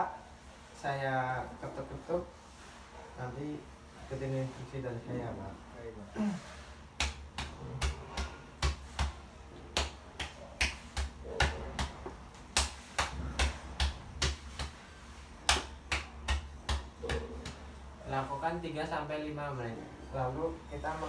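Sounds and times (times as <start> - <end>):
cupped hands patting a back: 6.9 - 14.8, 15.4 - 17.8.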